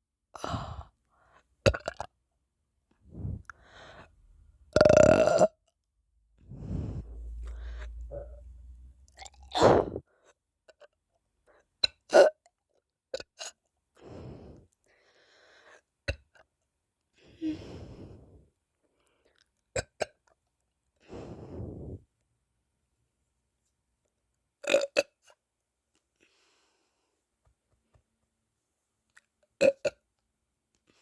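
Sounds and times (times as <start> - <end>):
breathing: 0.4 - 1.5, 3.0 - 4.7, 6.4 - 9.2, 14.0 - 15.9, 17.2 - 19.4, 21.0 - 22.1, 26.2 - 27.2
person burping: 4.7 - 5.5.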